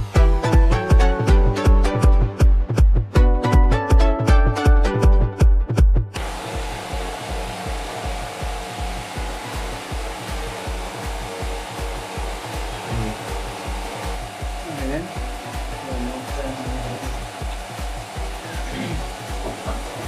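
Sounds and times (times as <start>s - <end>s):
electric fan blowing air: 0.0s - 2.3s, 6.2s - 20.0s
faint motor hum: 6.2s - 20.0s
faint music: 6.9s - 20.0s.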